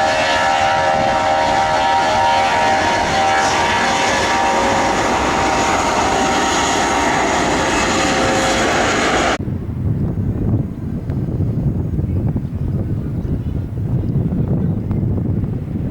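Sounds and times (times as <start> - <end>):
jet engines roaring and whining: 0.0 - 9.4.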